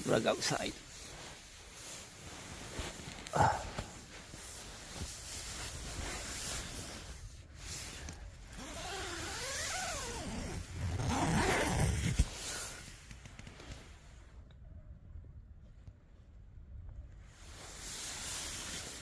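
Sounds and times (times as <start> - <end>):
nylon fabric rustling: 0.0 - 14.0, 17.4 - 19.0
tent zipper being pulled open: 0.9 - 14.0, 17.7 - 19.0.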